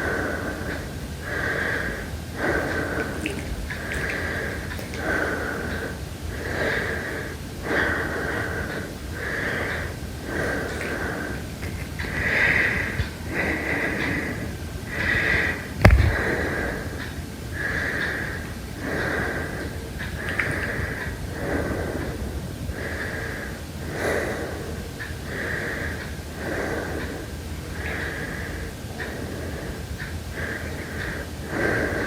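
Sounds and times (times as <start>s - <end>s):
heavy whistling breathing: 0.0s - 17.0s.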